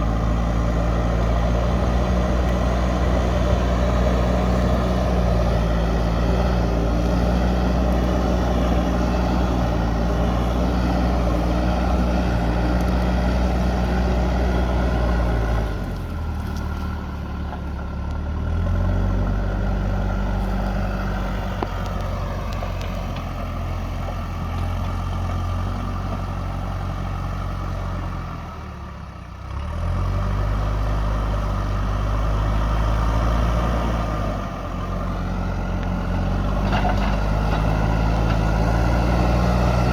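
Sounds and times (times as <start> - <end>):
diesel engine revving: 0.0 - 39.9.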